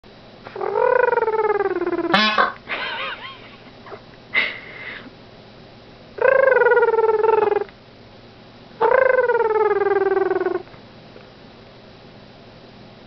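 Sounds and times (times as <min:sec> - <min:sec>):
peacock honking call: 0:02.1 - 0:02.6.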